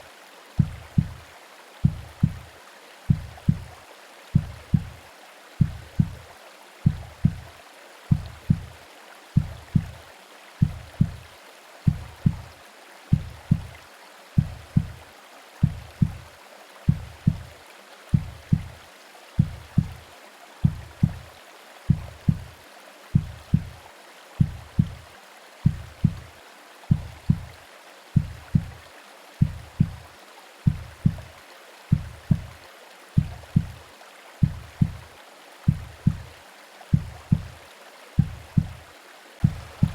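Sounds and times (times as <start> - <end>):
rain: 0.0 - 39.9
white noise hiss: 0.0 - 39.9
heartbeat low thumps: 0.6 - 1.2, 1.8 - 2.5, 3.1 - 3.8, 4.4 - 5.0, 5.6 - 7.5, 8.1 - 8.8, 9.4 - 10.0, 10.6 - 11.3, 11.9 - 13.8, 14.4 - 15.0, 15.6 - 16.3, 16.9 - 17.5, 18.1 - 18.8, 19.4 - 20.0, 20.6 - 21.3, 21.9 - 22.6, 23.2 - 23.8, 24.4 - 26.3, 26.9 - 27.6, 28.2 - 30.1, 30.7 - 31.3, 31.9 - 32.6, 33.2 - 33.8, 34.4 - 35.1, 35.7 - 37.6, 38.2 - 38.8, 39.4 - 39.9.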